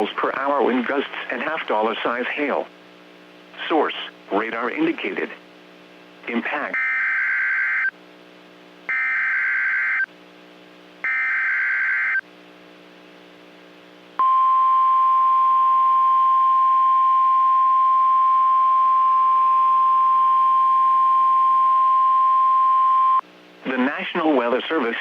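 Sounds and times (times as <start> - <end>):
steady warning tone: 8.9 - 10.1, 11.0 - 12.2.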